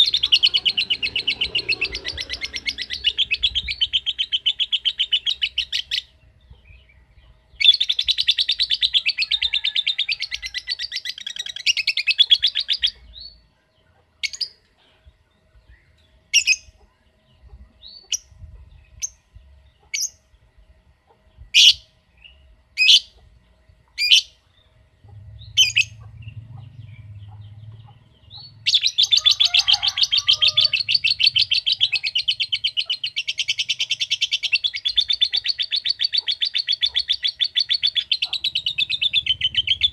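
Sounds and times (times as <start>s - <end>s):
lovebird chattering trill: 0.0s - 6.9s, 16.3s - 16.9s, 21.6s - 23.2s, 25.4s - 39.9s.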